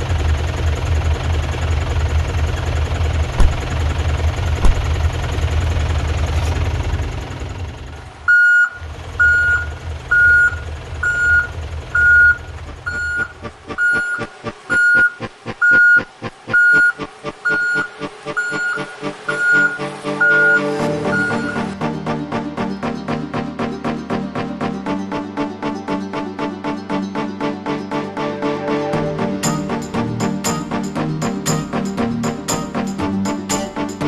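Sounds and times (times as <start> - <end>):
vehicle engine running: 0.0 - 34.0
reversing alarm beeping: 8.3 - 21.8.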